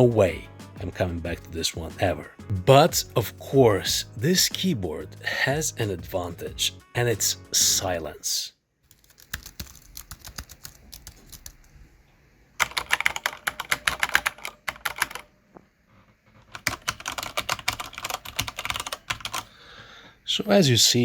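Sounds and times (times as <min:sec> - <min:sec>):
loud mechanical keyboard typing: 0:08.9 - 0:11.7, 0:12.6 - 0:15.3, 0:16.5 - 0:19.5
soft membrane keyboard typing: 0:08.9 - 0:11.7, 0:12.6 - 0:15.3, 0:16.4 - 0:19.5.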